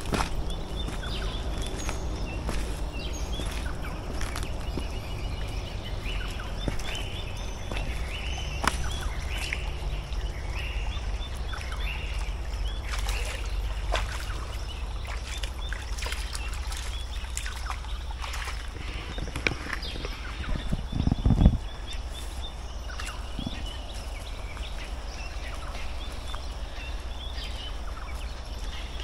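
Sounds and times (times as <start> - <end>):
footsteps on wet track: 0.0 - 21.0
birds calling: 0.0 - 29.0
steady low rumble: 0.0 - 29.0.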